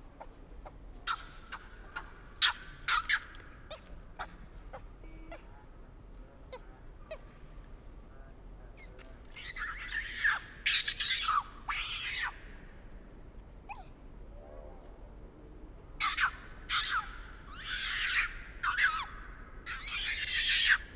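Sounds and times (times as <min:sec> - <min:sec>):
baby monkey squeaking and screaming: 0:01.0 - 0:05.4, 0:09.3 - 0:12.5, 0:13.7 - 0:13.9, 0:16.0 - 0:20.9.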